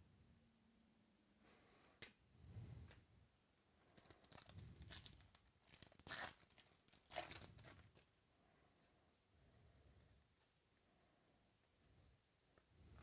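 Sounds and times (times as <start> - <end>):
foil wrapper tearing and crinkling: 3.8 - 8.0.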